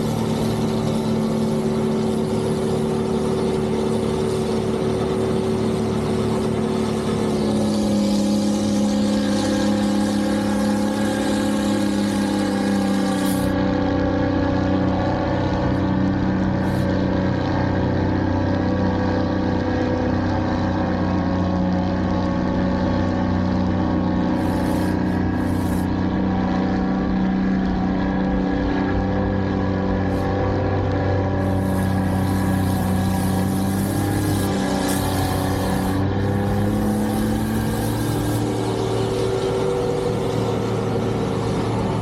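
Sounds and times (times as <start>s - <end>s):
large engine droning: 0.0s - 42.0s.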